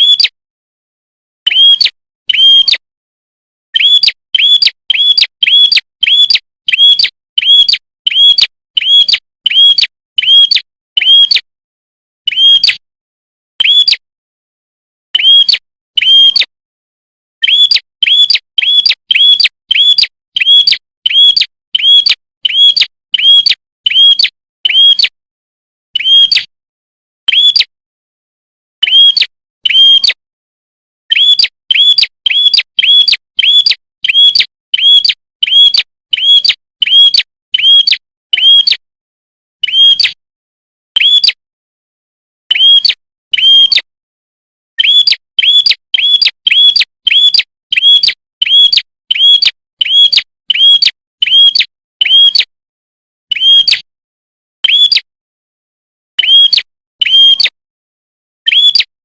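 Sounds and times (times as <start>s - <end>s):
bird singing shrill notes: 3.8s - 11.4s, 13.6s - 14.0s, 17.4s - 25.1s, 31.1s - 38.8s, 44.8s - 52.2s.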